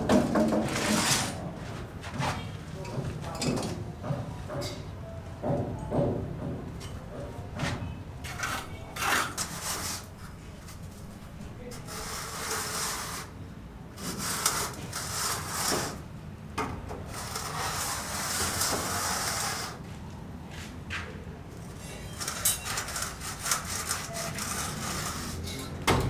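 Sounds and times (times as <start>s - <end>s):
hand tool rasping scraping: 8.2s - 13.4s, 14.0s - 16.1s, 17.1s - 19.8s, 21.6s - 25.8s.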